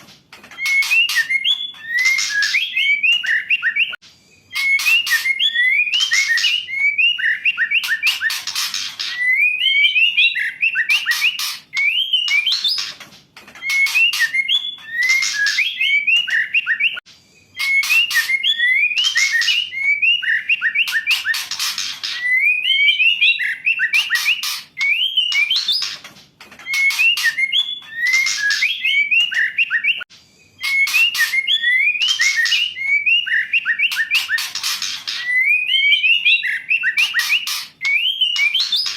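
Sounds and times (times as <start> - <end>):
bird whistling and raspy calls: 0.0 - 13.0, 13.6 - 38.9.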